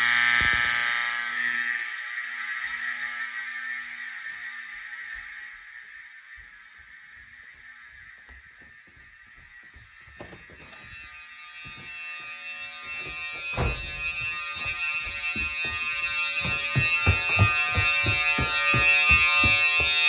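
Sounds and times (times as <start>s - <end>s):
fire alarm horns buzzing: 0.0s - 20.0s
low thuds: 13.0s - 20.0s.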